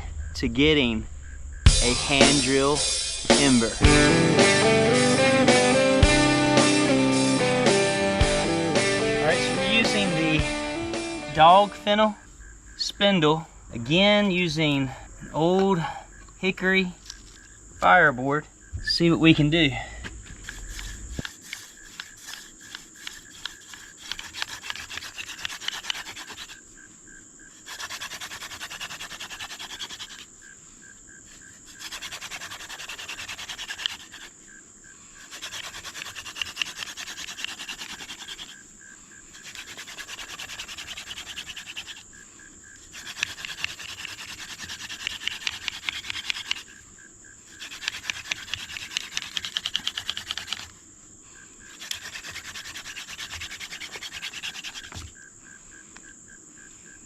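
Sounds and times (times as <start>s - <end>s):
wooden spindle grinding on fireboard: 20.2s - 26.6s, 27.6s - 30.3s, 31.3s - 34.3s, 35.2s - 38.6s, 39.4s - 42.1s, 42.9s - 46.7s, 47.6s - 50.7s, 51.7s - 55.1s.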